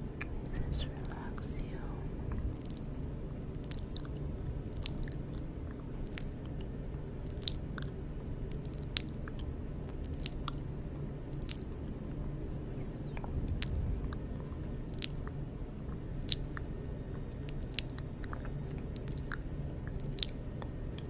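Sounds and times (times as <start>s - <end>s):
steady low rumble: 0.0s - 21.0s
wet mouth clicks and lip smacks: 2.5s - 2.9s, 3.5s - 5.4s, 6.0s - 6.6s, 7.2s - 10.6s, 11.3s - 11.8s, 13.5s - 14.2s, 14.8s - 15.4s, 16.2s - 16.7s, 17.4s - 20.4s.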